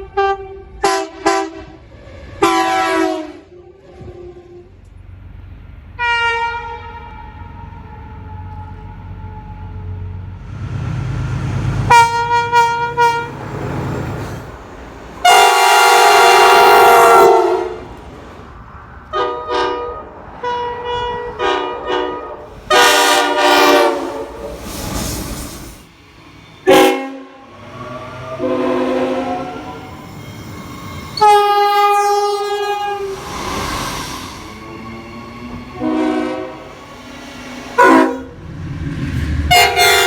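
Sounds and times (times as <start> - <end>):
train horn blasts: 0.0 - 1.8, 2.4 - 4.7, 6.0 - 10.0, 11.9 - 13.5, 15.2 - 17.9, 19.1 - 24.6, 26.6 - 27.5, 28.4 - 29.9, 31.2 - 33.3, 35.7 - 38.4, 39.5 - 40.0.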